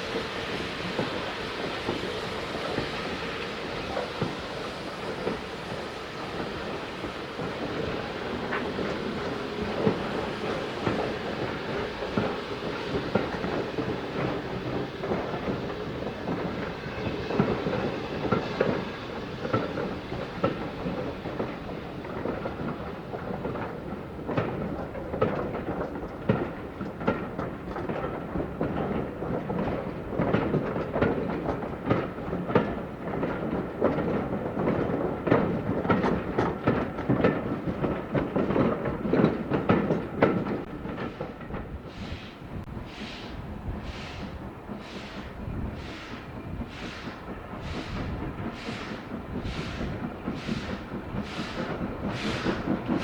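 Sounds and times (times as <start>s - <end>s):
steam train running past: 0.0s - 53.0s
wheels clattering over rail joints: 19.4s - 53.0s.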